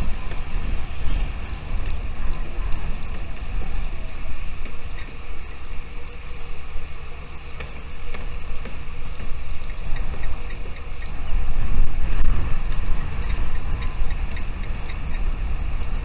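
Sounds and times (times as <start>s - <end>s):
wind rumble on microphone: 0.0s - 16.0s.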